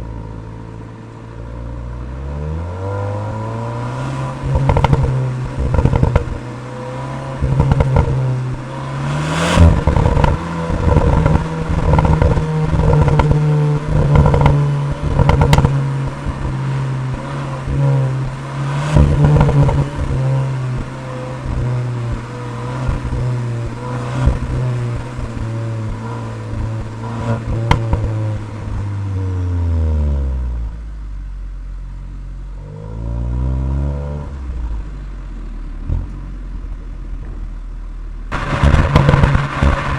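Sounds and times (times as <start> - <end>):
car engine running: 0.0 - 33.0, 34.2 - 39.9
sharp exhaust cracks: 3.3 - 29.0, 38.3 - 39.9.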